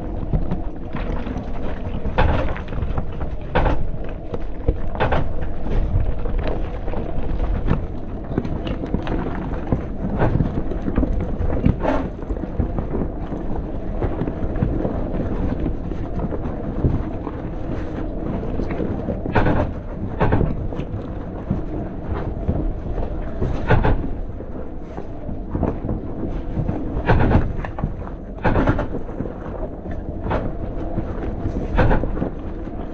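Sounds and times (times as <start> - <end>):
tyres rumbling on rough trail: 0.0 - 32.9
suspension knocks and clunks: 0.3 - 17.1, 18.6 - 32.6.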